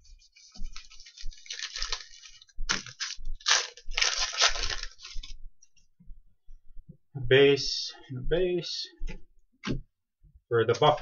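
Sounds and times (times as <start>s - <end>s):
card packaging crinkling: 0.7s - 5.3s.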